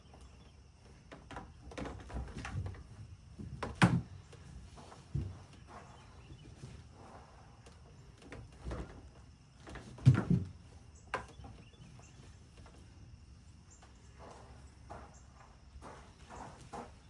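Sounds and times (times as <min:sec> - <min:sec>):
knocks and thumps: 0:01.1 - 0:04.4, 0:08.2 - 0:11.7.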